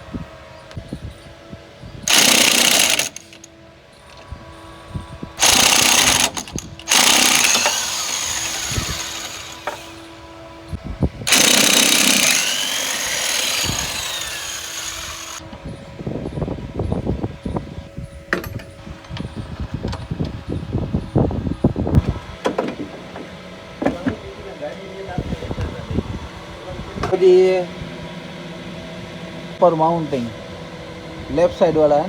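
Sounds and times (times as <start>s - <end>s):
pneumatic impact wrench hammering: 2.1s - 3.5s, 5.4s - 10.0s, 11.3s - 15.4s.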